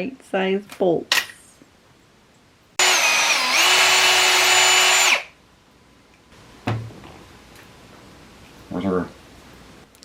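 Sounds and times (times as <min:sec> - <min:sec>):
power drill whining: 0:02.8 - 0:05.3.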